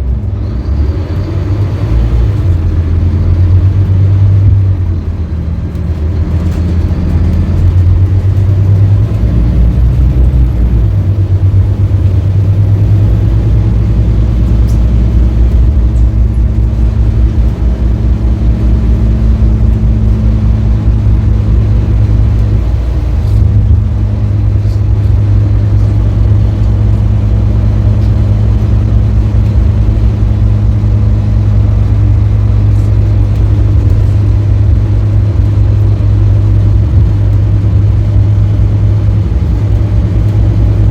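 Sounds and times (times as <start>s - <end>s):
bus diesel engine drone: 0.0s - 40.9s
road noise: 0.0s - 40.9s.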